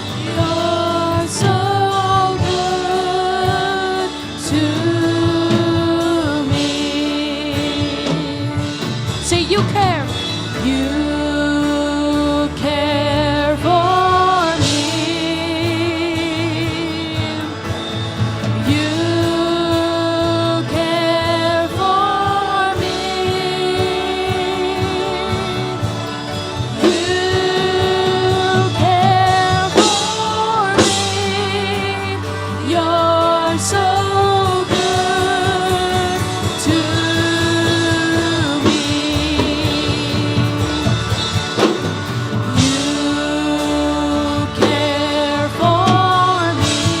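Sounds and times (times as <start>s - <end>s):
instrumental accompaniment: 0.0s - 47.0s
person singing with vibrato: 0.0s - 47.0s.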